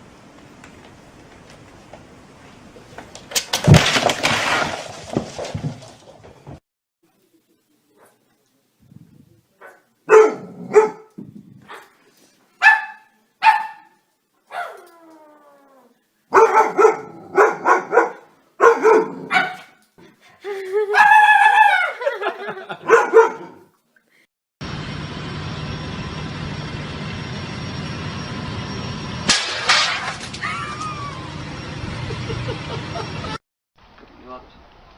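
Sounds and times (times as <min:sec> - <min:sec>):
dog barking: 0:09.6 - 0:12.0, 0:12.6 - 0:14.8, 0:16.3 - 0:19.8, 0:22.8 - 0:23.7
dog howling: 0:20.9 - 0:22.1, 0:30.4 - 0:31.5.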